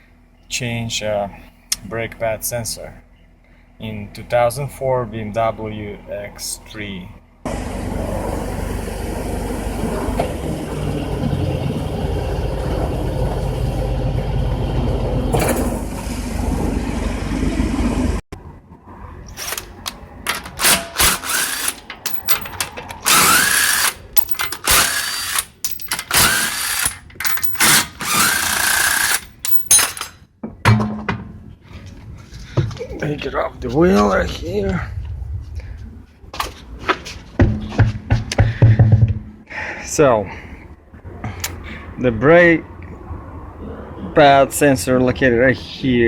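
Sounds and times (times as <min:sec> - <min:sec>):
steady low rumble: 0:00.0 - 0:28.2, 0:31.2 - 0:39.7
power tool whirring: 0:19.4 - 0:30.1.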